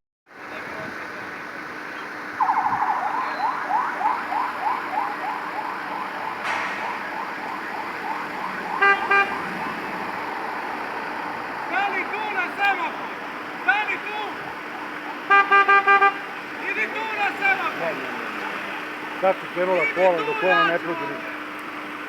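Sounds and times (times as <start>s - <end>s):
traffic noise: 0.3s - 22.0s
police siren yelping: 2.0s - 21.4s
car horn toots: 8.7s - 9.6s, 15.3s - 16.4s.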